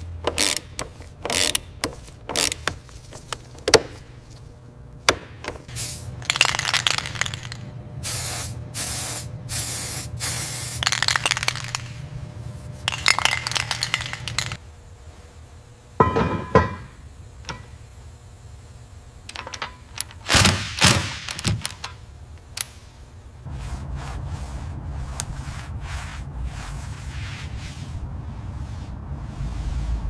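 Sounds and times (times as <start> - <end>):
steady low hum: 0.0 - 30.0
parts clinking and knocking: 12.8 - 14.6, 16.0 - 17.7, 19.3 - 20.2.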